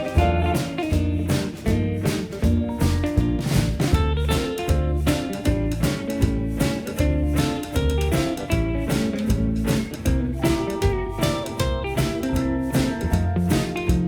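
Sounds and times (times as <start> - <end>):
blues guitar music with drums: 0.0 - 14.0.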